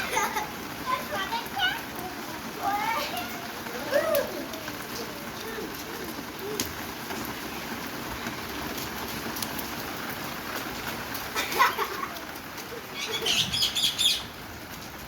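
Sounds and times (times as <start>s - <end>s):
heavy rain with patter: 0.0s - 15.0s
high voice-like calls: 12.8s - 14.4s.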